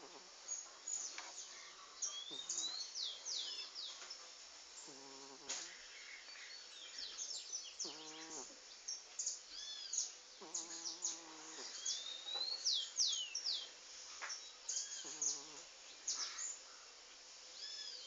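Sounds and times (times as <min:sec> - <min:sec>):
cat snoring: 0:04.8 - 0:05.6.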